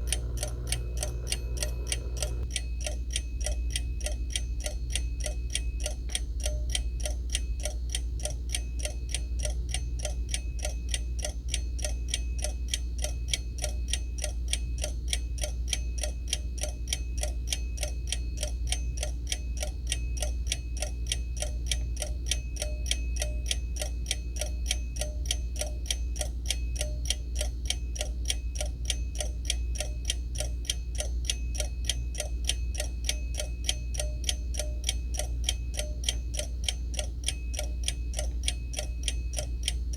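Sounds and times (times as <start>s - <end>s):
alarm clock ticking: 0.0s - 39.9s.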